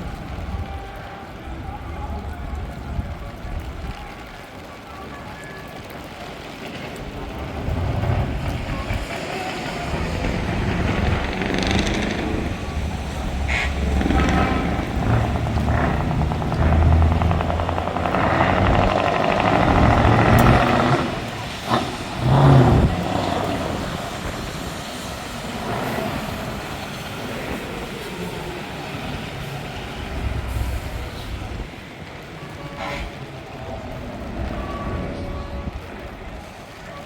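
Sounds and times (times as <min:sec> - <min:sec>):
truck engine revving: 0:07.2 - 0:27.3.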